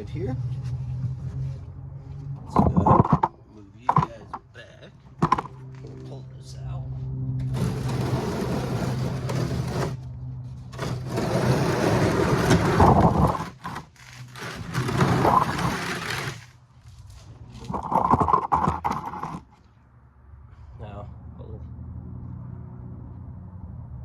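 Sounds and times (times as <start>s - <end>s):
drain pan scraping on ground: 7.5s - 10.0s, 10.7s - 16.6s, 17.6s - 19.5s.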